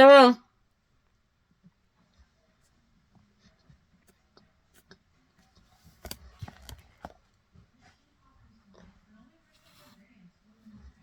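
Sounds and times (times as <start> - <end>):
crunching and chewing: 4.4 - 7.3.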